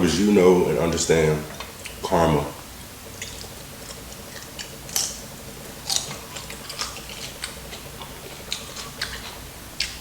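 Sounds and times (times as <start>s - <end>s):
person chewing crunchy food: 1.5s - 2.0s, 2.8s - 10.0s
wet mouth clicks: 3.2s - 10.0s.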